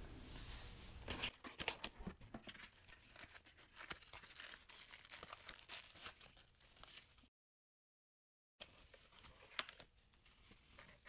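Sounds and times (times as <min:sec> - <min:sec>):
packaging tearing and crinkling: 0:02.6 - 0:07.2.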